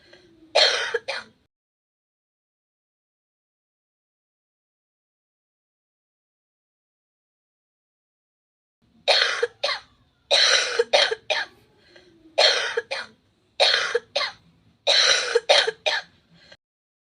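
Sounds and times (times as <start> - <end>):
woman coughing: 0.6 - 1.3, 9.1 - 11.6, 12.4 - 16.1.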